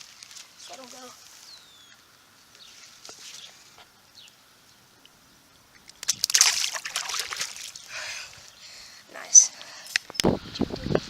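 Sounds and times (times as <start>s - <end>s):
water splashing and sloshing: 5.7s - 8.6s.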